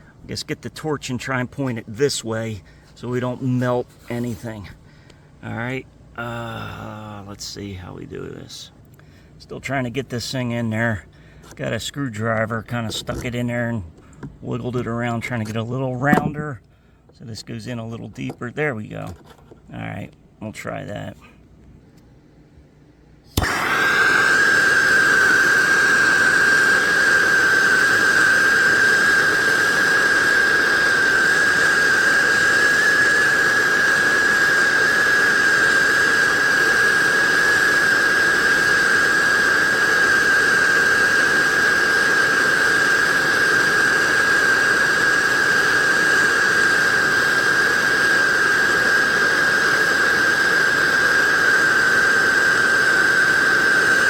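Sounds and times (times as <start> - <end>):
propane torch hissing: 0.0 - 4.8, 12.6 - 16.4, 23.2 - 54.0.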